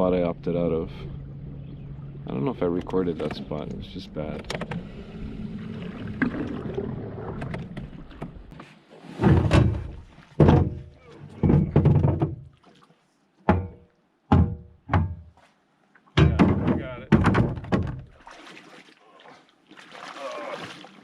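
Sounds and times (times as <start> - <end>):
hollow thunks on canoe hull: 9.2 - 12.5, 13.4 - 15.4, 16.2 - 18.2.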